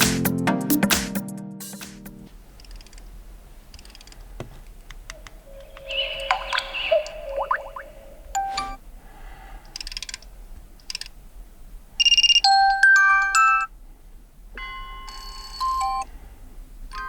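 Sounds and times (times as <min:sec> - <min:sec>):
electronic alarm chimes: 0:05.6 - 0:08.8.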